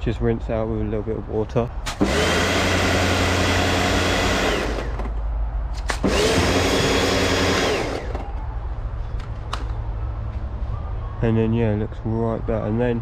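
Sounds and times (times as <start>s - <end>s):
small electric motor running: 2.0s - 5.1s, 6.0s - 8.2s.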